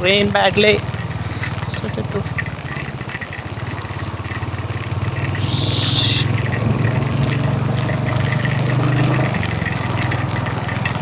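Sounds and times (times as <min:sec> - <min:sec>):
motorcycle engine running: 0:00.0 - 0:11.0
short hiss: 0:05.3 - 0:06.6.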